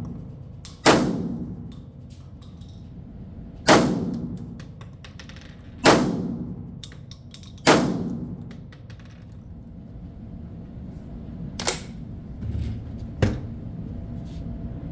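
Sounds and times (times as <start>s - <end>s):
shotgun shots echoing: 0.8s - 1.6s, 3.7s - 4.4s, 5.8s - 6.5s, 7.6s - 8.4s.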